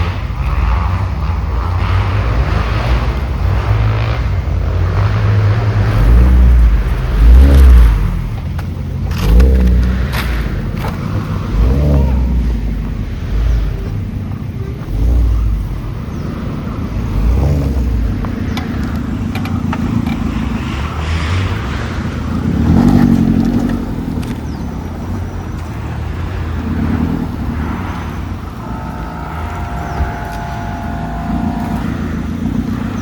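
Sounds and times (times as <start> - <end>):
off-road vehicle engine running: 0.0 - 33.0
knocks and clatter: 18.2 - 20.6
steady whistle-like tone: 27.9 - 33.0.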